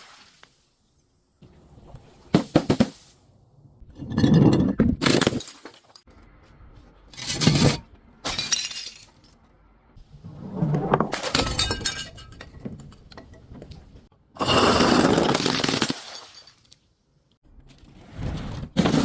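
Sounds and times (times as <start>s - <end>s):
glass bottles shattering: 4.0s - 6.0s, 8.3s - 9.4s, 11.1s - 13.4s, 14.4s - 16.9s.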